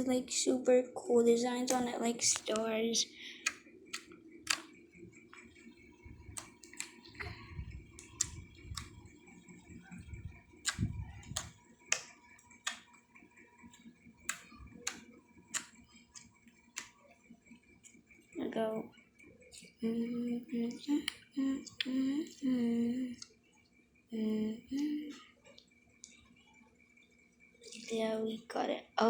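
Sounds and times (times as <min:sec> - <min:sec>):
slime clicking and popping: 0:03.4 - 0:04.7, 0:10.6 - 0:12.9
slime squishing: 0:03.4 - 0:13.0.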